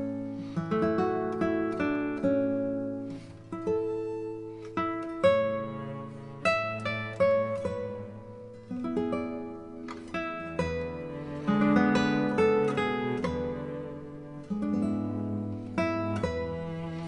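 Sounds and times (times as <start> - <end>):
acoustic guitar plucking: 0.0 - 17.0.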